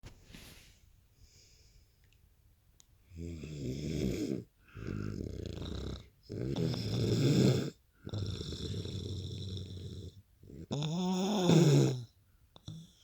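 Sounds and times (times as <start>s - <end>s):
faint breathing: 0.2s - 2.1s
loud snoring: 3.1s - 13.0s.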